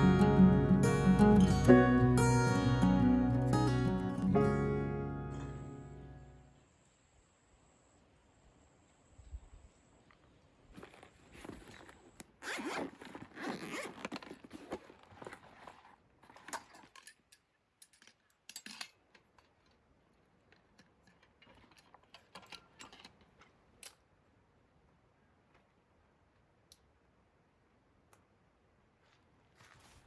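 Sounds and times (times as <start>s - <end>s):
light clicks and scrapes: 10.7s - 24.0s
zipper being pulled: 10.8s - 16.5s.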